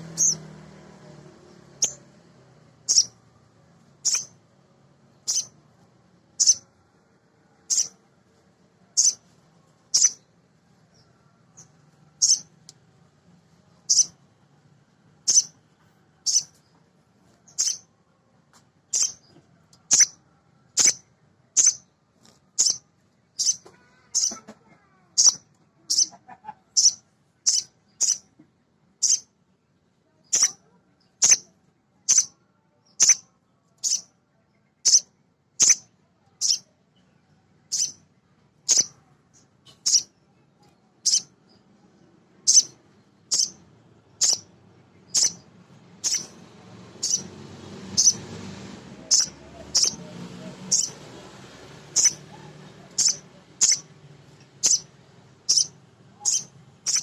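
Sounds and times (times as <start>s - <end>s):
bird chip calls: 0.1s - 0.4s, 1.8s - 2.0s, 2.9s - 3.2s, 4.0s - 4.3s, 5.2s - 5.6s, 6.4s - 6.6s, 7.7s - 8.0s, 9.0s - 9.2s, 9.9s - 10.2s, 11.6s - 12.5s, 13.9s - 14.2s, 15.3s - 15.6s, 16.3s - 16.5s, 17.5s - 17.9s, 18.9s - 20.2s, 20.8s - 21.0s, 21.6s - 21.9s, 22.6s - 22.8s, 23.4s - 24.4s, 25.2s - 28.3s, 29.0s - 29.3s, 30.2s - 30.6s, 31.2s - 31.5s, 32.1s - 32.4s, 33.0s - 33.2s, 33.8s - 34.1s, 34.8s - 36.7s, 37.7s - 38.0s, 38.7s - 39.0s, 39.7s - 40.1s, 41.0s - 41.3s, 42.5s - 43.6s, 44.2s - 44.5s, 45.1s - 45.4s, 46.0s - 46.4s, 47.0s - 47.3s, 48.0s - 48.2s, 49.1s - 50.1s, 50.7s - 51.0s, 52.0s - 53.9s, 54.6s - 54.9s, 55.5s - 57.0s.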